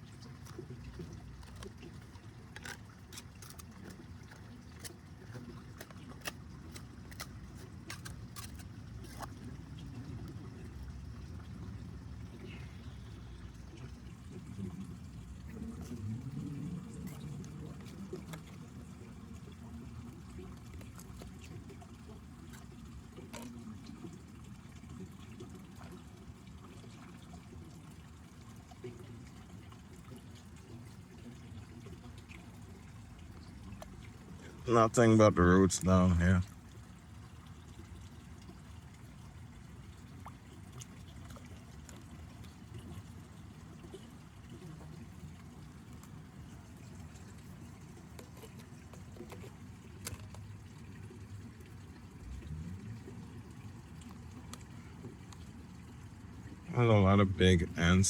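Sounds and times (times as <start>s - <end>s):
digging soil and stones by hand: 0.0s - 9.7s
small clicks and scrapes: 0.0s - 10.4s, 16.8s - 24.1s, 40.2s - 43.0s, 44.5s - 51.2s, 54.0s - 55.5s
low steady rumble: 0.0s - 58.0s
pond water trickling: 0.0s - 58.0s.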